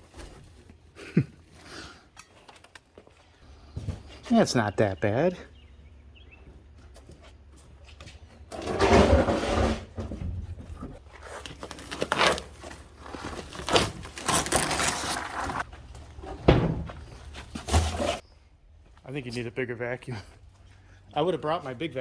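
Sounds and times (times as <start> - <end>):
rustling and scraping debris: 6.9 - 18.3.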